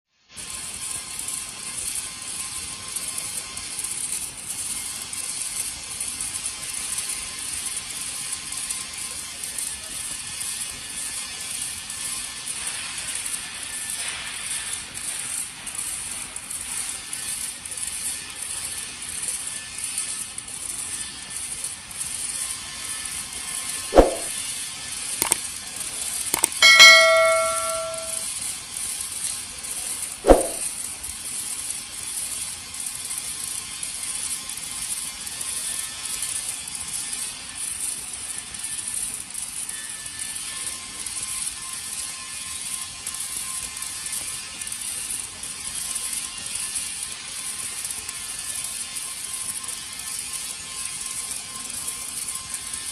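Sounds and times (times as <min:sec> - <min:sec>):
sharp metal knocks: 0:24.0 - 0:24.3, 0:26.4 - 0:28.2, 0:30.2 - 0:30.6
ringing metal clang: 0:26.4 - 0:28.2, 0:30.3 - 0:30.6.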